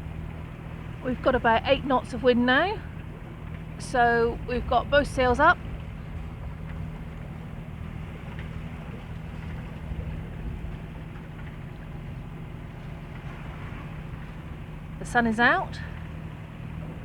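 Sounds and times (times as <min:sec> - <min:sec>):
boat engine droning: 0:00.0 - 0:17.0.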